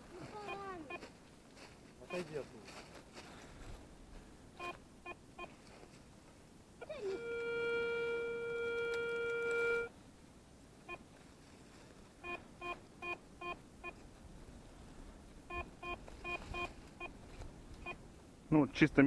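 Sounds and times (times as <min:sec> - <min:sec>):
metal detector steady tone: 0:04.6 - 0:05.5, 0:06.8 - 0:10.0, 0:12.2 - 0:14.0, 0:15.5 - 0:17.2
metal detector short beeps: 0:07.0 - 0:09.9, 0:15.5 - 0:17.1.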